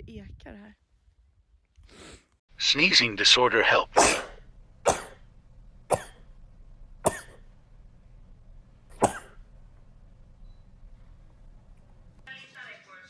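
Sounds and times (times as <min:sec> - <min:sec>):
person sneezing: 0:04.0 - 0:05.2, 0:09.0 - 0:09.4.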